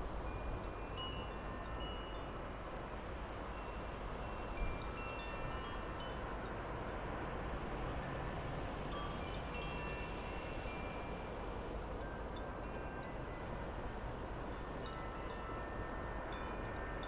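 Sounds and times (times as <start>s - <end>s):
low rumble of wind: 0.0s - 17.0s
wind chimes ringing: 0.3s - 2.4s, 3.5s - 6.6s, 8.0s - 11.3s, 12.0s - 17.0s.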